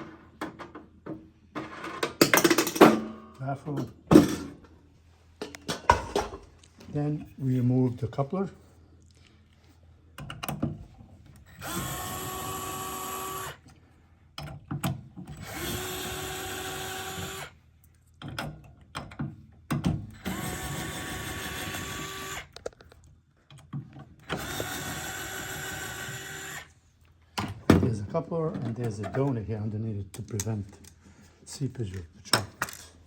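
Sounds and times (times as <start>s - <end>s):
power drill motor spinning: 11.4s - 13.7s, 15.3s - 17.6s, 20.2s - 22.8s, 24.2s - 26.8s
clicks and handling knocks: 31.9s - 33.0s.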